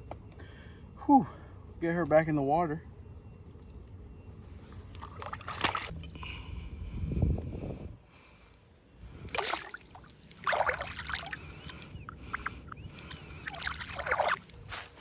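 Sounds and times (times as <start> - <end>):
water splashing and sloshing: 4.7 - 6.0, 9.3 - 15.0.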